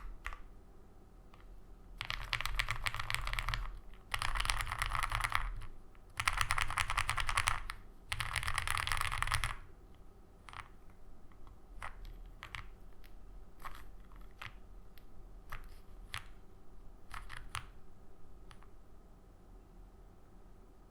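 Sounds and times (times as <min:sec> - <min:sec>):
rolls of keyboard keystrokes: 0:01.3 - 0:09.7, 0:10.4 - 0:16.4, 0:17.0 - 0:17.8.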